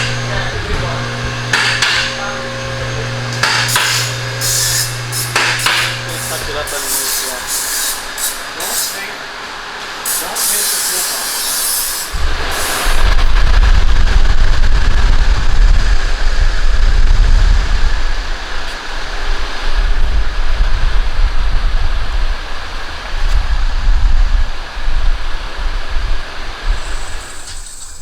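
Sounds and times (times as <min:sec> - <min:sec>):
engine rough low rumble: 0:00.0 - 0:06.8.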